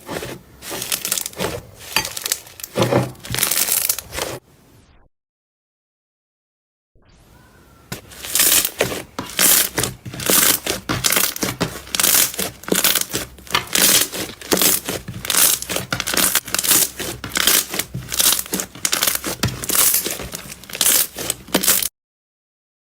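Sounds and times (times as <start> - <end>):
slime crackling and popping: 0.6 - 4.4, 8.0 - 21.9.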